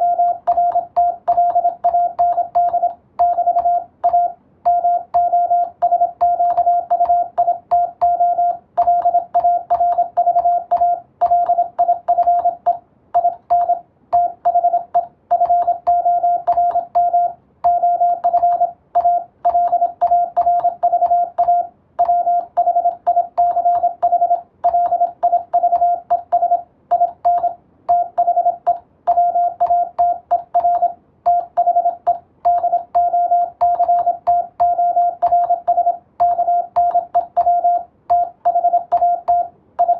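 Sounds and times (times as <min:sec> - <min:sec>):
morse code tone: 0:00.0 - 0:39.9.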